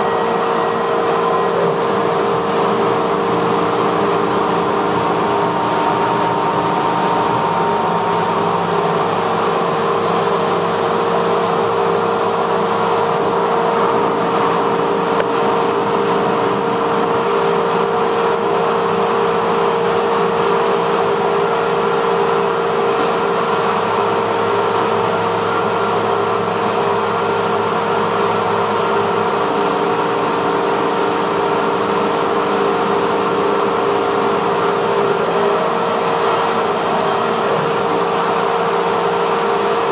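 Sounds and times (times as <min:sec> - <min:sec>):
machine low hum: 0:00.0 - 0:19.6.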